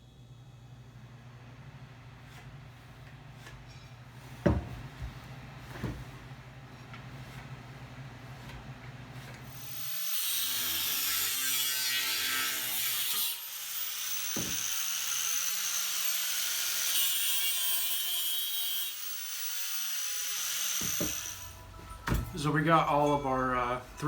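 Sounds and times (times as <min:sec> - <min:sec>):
saw cutting steel tubing: 0:09.2 - 0:21.6.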